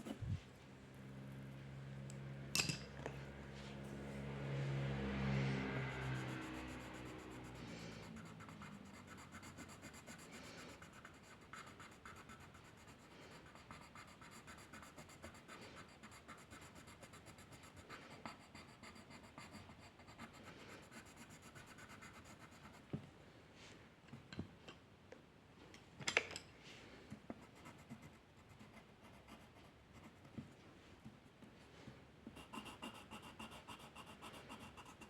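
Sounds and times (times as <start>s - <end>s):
drawing tool scratching on paper: 6.0s - 22.9s, 32.4s - 35.0s.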